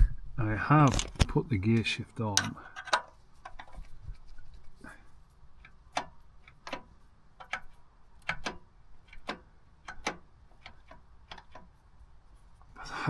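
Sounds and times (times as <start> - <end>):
sharp metallic clicks: 5.6 - 11.7.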